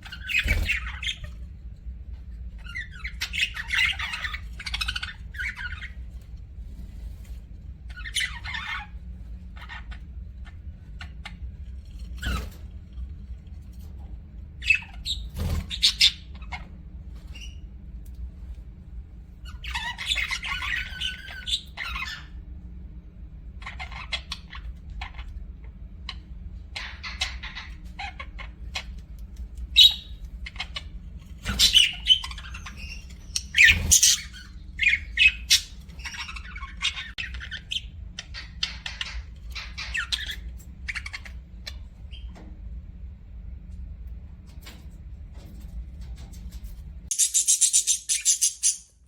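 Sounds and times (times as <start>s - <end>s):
budgerigars chattering and squawking: 0.0s - 1.6s, 2.6s - 6.4s, 7.8s - 12.6s, 14.6s - 16.7s, 19.4s - 22.4s, 23.5s - 42.4s, 47.1s - 49.0s
faint low hum: 0.0s - 49.0s.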